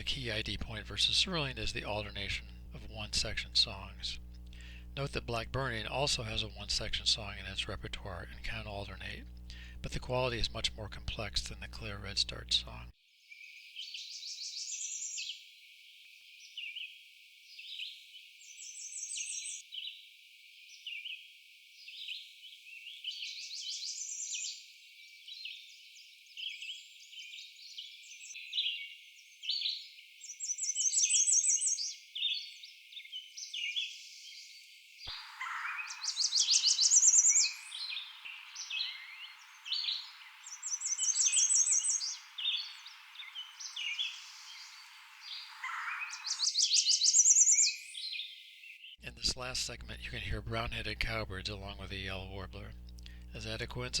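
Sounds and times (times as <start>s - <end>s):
cowbirds calling: 0.0s - 12.9s, 35.1s - 47.8s, 49.0s - 54.0s
steady background hiss: 0.0s - 12.9s, 35.1s - 46.7s, 49.0s - 54.0s
warbler singing: 0.0s - 12.9s, 33.0s - 54.0s
click: 52.7s - 53.3s.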